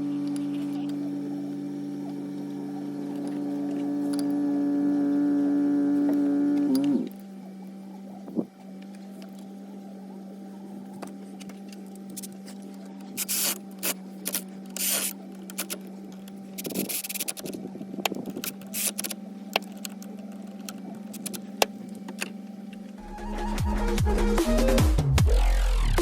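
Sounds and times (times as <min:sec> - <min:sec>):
steady low hum: 0:00.0 - 0:26.0
tools clicking on engine parts: 0:10.9 - 0:23.0.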